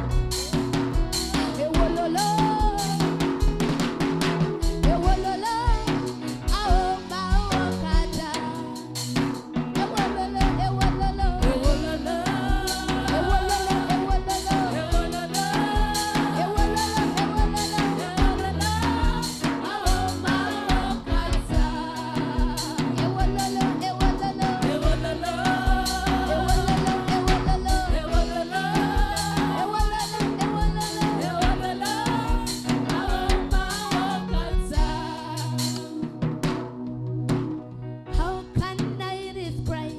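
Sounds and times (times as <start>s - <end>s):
person singing: 0.0s - 3.6s, 9.8s - 36.3s
drum kit beat: 0.0s - 39.1s
gospel band playing: 0.0s - 39.9s.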